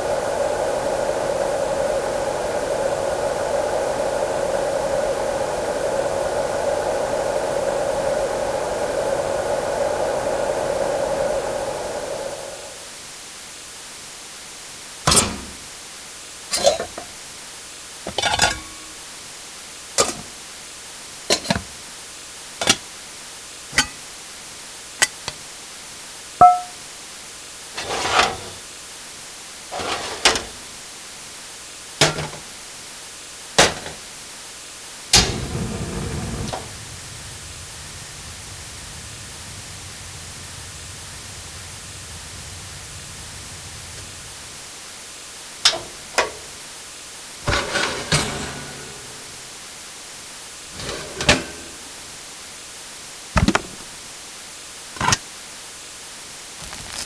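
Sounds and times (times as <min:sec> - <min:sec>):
cooking utensils clattering: 0:15.1 - 0:15.6, 0:16.5 - 0:17.1, 0:18.1 - 0:19.0, 0:20.0 - 0:20.4, 0:22.6 - 0:22.8, 0:23.7 - 0:24.0, 0:26.4 - 0:26.8, 0:27.8 - 0:28.6, 0:29.7 - 0:30.6, 0:32.0 - 0:32.5, 0:33.6 - 0:34.0, 0:45.7 - 0:46.5, 0:47.4 - 0:49.4, 0:50.7 - 0:52.0
low steady hum: 0:18.1 - 0:19.2, 0:26.4 - 0:26.9, 0:35.0 - 0:49.8
metallic ping: 0:26.4 - 0:26.8.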